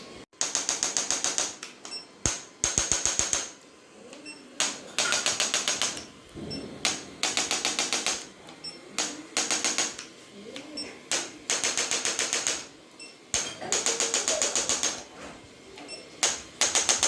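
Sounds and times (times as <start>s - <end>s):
rapid electric clicking: 0.4s - 3.6s, 4.6s - 6.1s, 6.8s - 8.4s, 9.0s - 12.7s, 13.3s - 15.1s, 16.2s - 17.0s.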